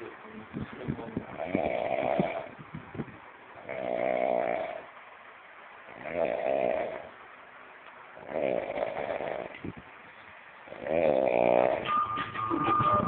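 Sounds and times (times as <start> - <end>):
person snoring: 1.4 - 2.5, 3.6 - 4.9, 5.9 - 7.1, 8.2 - 9.6, 10.7 - 11.9.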